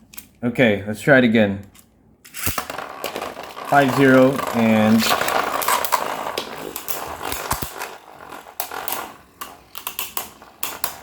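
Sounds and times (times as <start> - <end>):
spinning tops clacking: 2.4 - 11.0
spinning tops whirring: 2.4 - 11.0.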